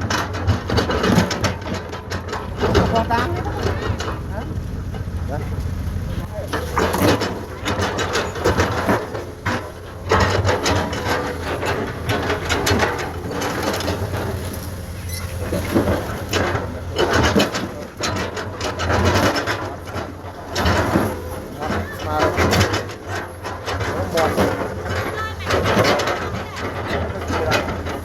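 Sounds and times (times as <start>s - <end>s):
diesel engine droning: 0.0s - 28.0s
bucket scraping soil and rock: 5.4s - 28.0s.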